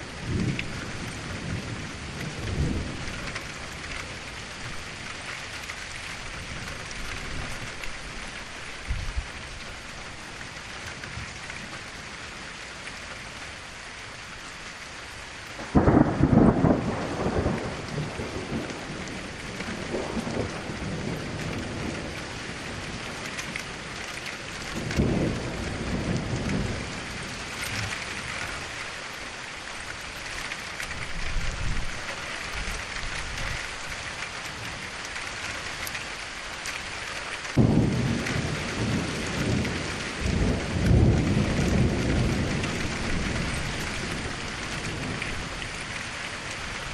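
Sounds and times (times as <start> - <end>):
steady rain falling: 0.0 - 46.9
thunder crack and rumble: 0.1 - 8.0, 15.6 - 28.8, 37.5 - 46.9.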